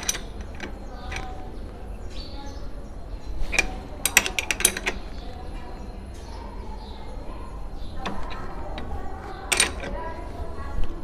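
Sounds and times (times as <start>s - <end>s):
spanner clicking on metal tool: 0.0s - 1.4s, 3.5s - 5.0s, 9.5s - 10.0s.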